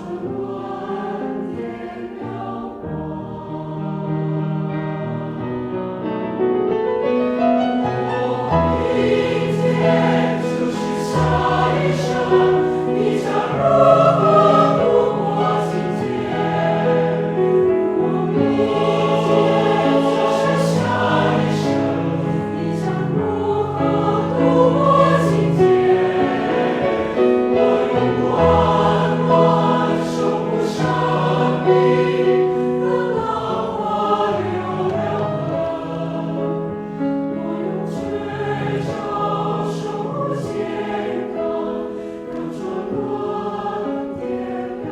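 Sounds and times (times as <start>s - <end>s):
mixed choir singing: 0.0s - 6.1s, 6.7s - 44.9s
piano accompaniment: 0.0s - 44.9s.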